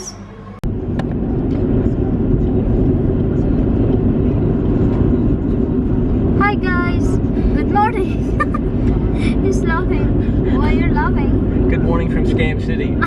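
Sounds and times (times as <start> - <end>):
car road and engine rumble: 0.0 - 13.0.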